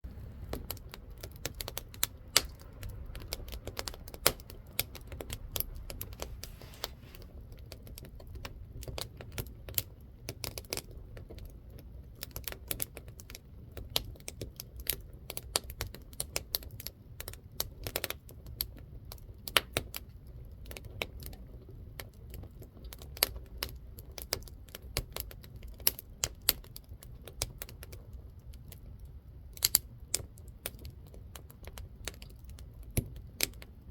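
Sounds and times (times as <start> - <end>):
low steady rumble: 0.0 - 10.3
firewood crackling and popping: 0.1 - 33.9.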